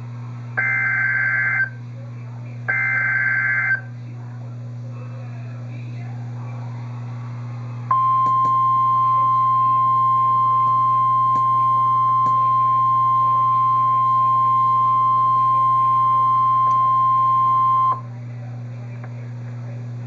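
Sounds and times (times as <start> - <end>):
low electrical hum: 0.0 - 20.0
high alarm tone: 0.6 - 1.8, 2.7 - 3.9, 7.9 - 18.0.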